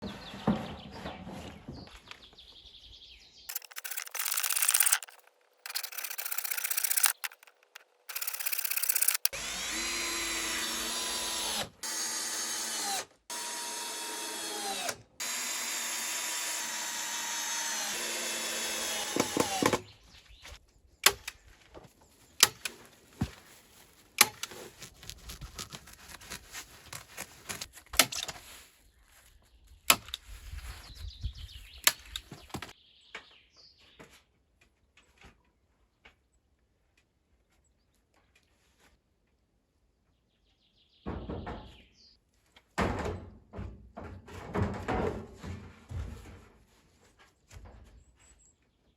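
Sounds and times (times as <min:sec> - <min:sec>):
power drill working wood: 0:03.5 - 0:19.8.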